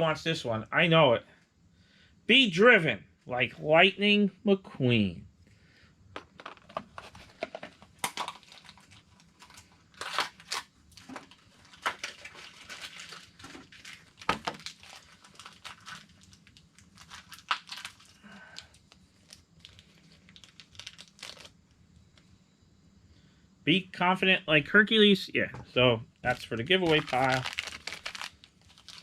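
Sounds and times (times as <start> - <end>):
foil bag crinkling and tearing: 6.4 - 21.6, 26.3 - 29.0.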